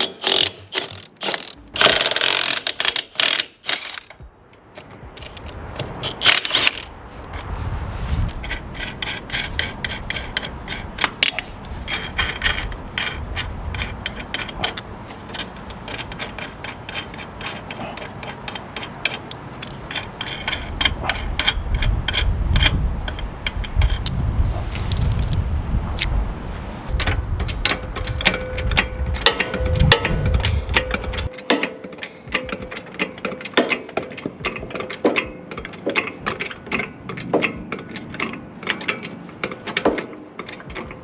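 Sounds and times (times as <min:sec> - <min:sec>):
hand tools clicking and rattling: 0:00.0 - 0:07.6, 0:08.2 - 0:25.4, 0:26.9 - 0:41.0
low rumbling: 0:04.2 - 0:31.3.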